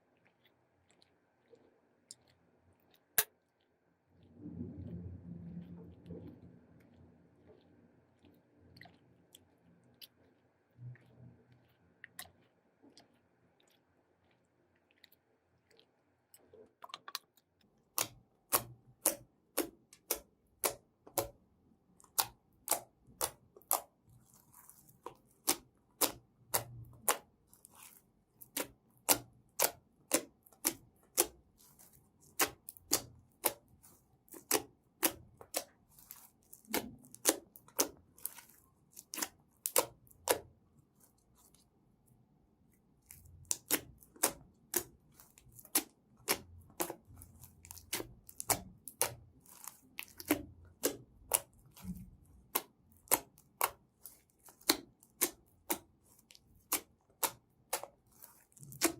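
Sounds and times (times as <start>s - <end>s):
slime being squeezed: 22.1s - 40.5s, 43.0s - 58.9s.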